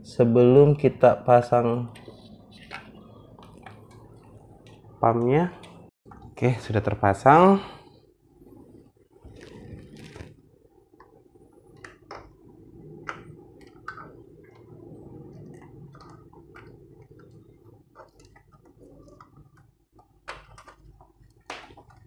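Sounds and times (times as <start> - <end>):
low hum: 7.7 - 20.0.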